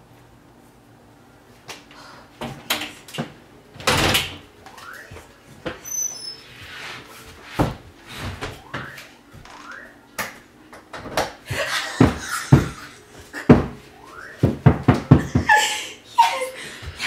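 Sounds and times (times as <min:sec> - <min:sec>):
short squeaks: 0:05.8 - 0:06.6.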